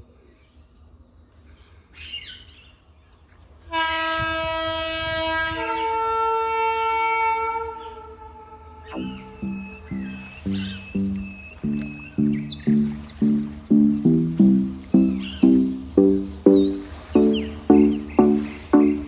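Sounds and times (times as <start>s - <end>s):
locomotive horn blast: 3.7s - 11.2s
rhythmic music: 8.9s - 19.0s.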